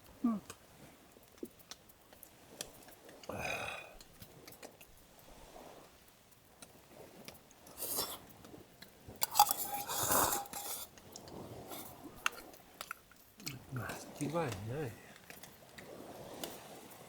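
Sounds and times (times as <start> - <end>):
quiet chewing: 0.2 - 5.0, 6.6 - 16.7
utensils clicking against dishes: 9.2 - 10.9
utensil scraping dish: 9.2 - 11.0.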